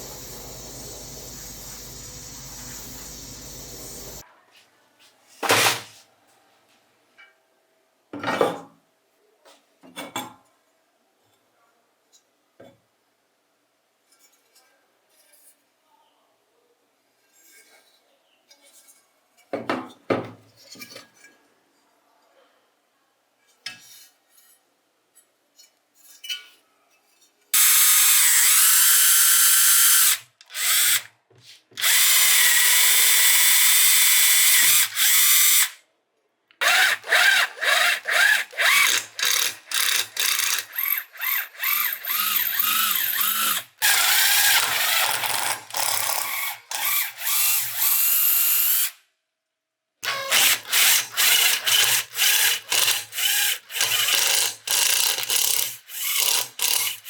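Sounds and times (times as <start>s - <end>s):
electric drill running: 0.0s - 4.2s, 27.6s - 31.0s, 31.8s - 35.8s, 36.6s - 48.6s, 50.0s - 57.0s.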